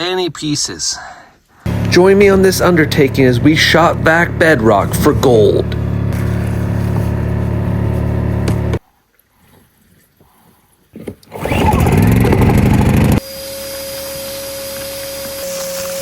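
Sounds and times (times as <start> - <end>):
shop vacuum motor whining: 1.7 - 8.8, 11.3 - 16.0
steady engine-like hum: 1.7 - 8.8.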